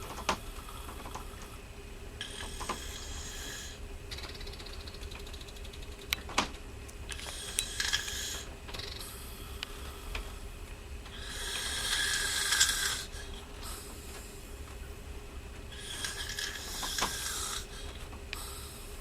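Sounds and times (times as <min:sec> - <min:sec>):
steady low hum: 0:00.0 - 0:19.0
person snoring: 0:11.2 - 0:13.7, 0:15.7 - 0:17.8.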